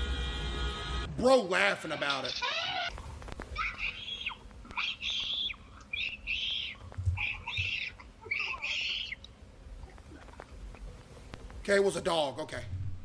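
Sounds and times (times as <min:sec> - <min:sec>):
raspy animal screeching calls: 0:01.9 - 0:09.3.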